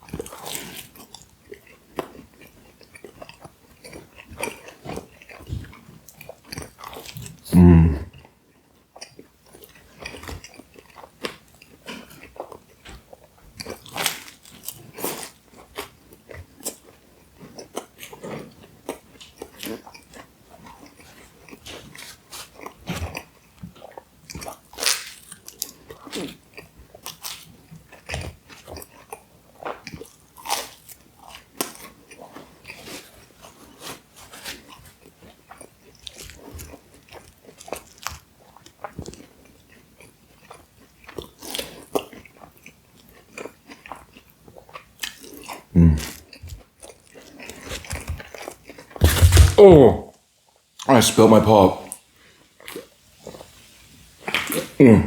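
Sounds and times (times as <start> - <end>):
wet chewing: 8.9 - 49.8
crisp bites and crunching: 49.0 - 50.0.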